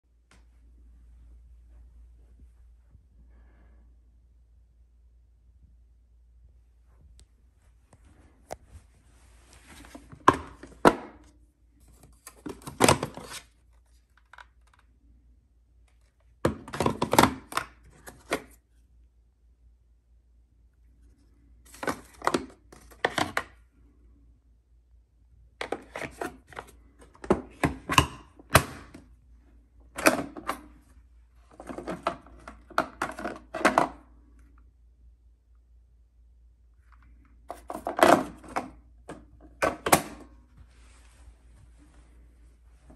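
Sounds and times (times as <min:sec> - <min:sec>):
plastic vacuum parts clicking and rattling: 0:11.9 - 0:14.9, 0:16.0 - 0:18.6, 0:21.7 - 0:23.6, 0:25.6 - 0:29.1, 0:29.9 - 0:30.8, 0:31.5 - 0:34.1, 0:36.8 - 0:40.3.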